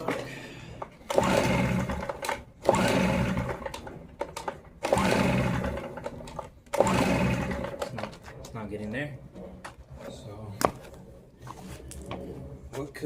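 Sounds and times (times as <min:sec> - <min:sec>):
engine cranking and sputtering: 0:00.0 - 0:10.2.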